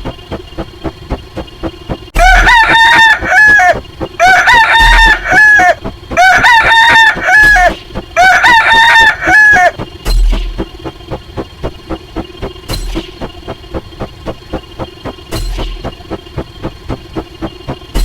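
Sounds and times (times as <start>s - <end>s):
low thumping beat: 0.0s - 18.0s
rooster crowing: 2.2s - 9.8s.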